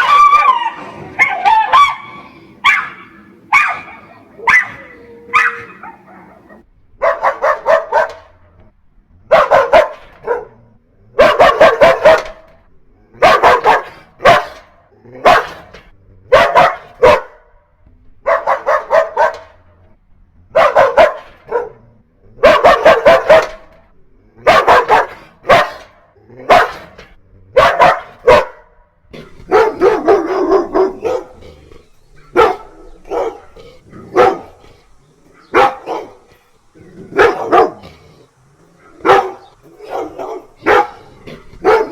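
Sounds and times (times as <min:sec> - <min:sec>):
dogs barking angrily: 0:00.0 - 0:41.9.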